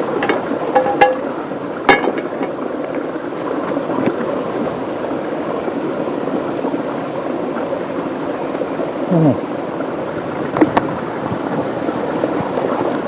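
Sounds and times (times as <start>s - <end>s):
thin high tone: 0.0s - 2.9s, 4.2s - 10.0s
rain: 0.0s - 13.0s.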